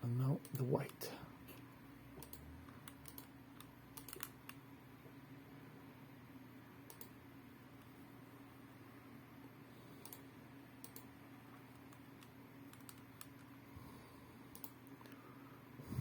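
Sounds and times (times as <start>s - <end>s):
low steady hum: 0.0s - 16.0s
faint computer input clicks: 2.2s - 4.6s, 6.9s - 7.2s, 10.0s - 11.1s, 14.5s - 15.2s.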